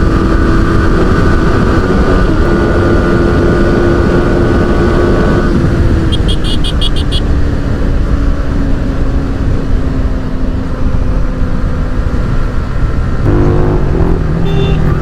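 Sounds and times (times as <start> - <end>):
wind rush on microphone: 0.0 - 6.4
motorcycle engine at speed: 0.0 - 15.0
second steady tone: 14.4 - 15.0.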